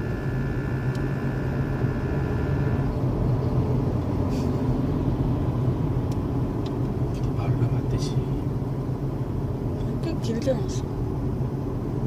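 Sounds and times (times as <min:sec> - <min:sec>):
high buzzing rattle: 0:00.0 - 0:03.0
car cabin road and engine drone: 0:00.0 - 0:12.0.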